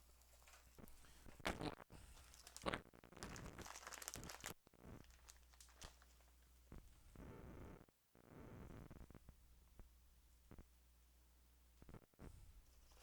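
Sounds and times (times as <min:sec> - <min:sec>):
plastic bag crinkling: 0:00.0 - 0:06.6.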